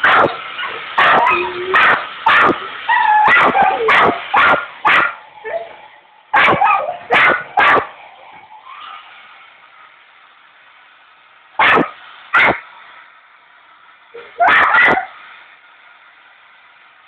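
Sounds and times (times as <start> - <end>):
dog barking: 0.0 - 0.4, 1.0 - 8.0, 11.6 - 12.6, 14.2 - 15.2.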